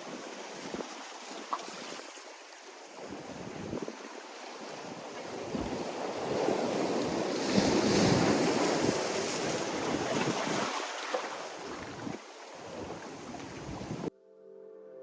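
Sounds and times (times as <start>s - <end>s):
sea waves breaking on shore: 0.0s - 14.1s
wind buffeting microphone: 3.0s - 10.9s, 11.5s - 14.1s.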